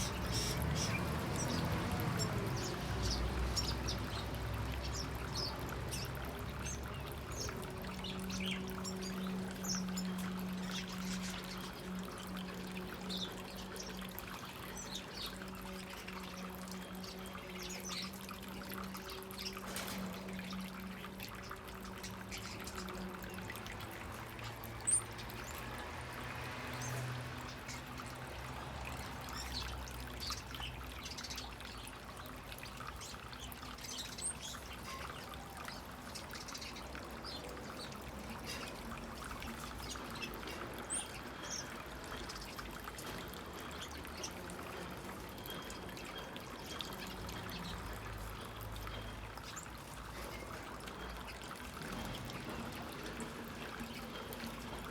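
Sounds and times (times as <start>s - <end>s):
small birds chirping: 0.0s - 23.1s
water pouring and trickling: 0.0s - 54.9s.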